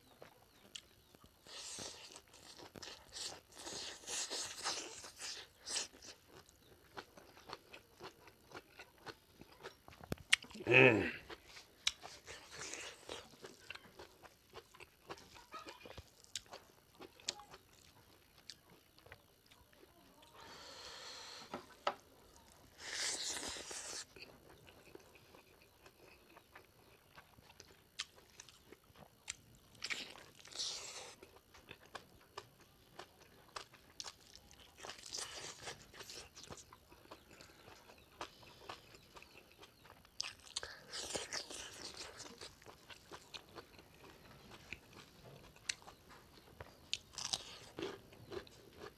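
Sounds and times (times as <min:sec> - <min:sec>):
close-up chewing and biting: 0:00.0 - 0:48.9.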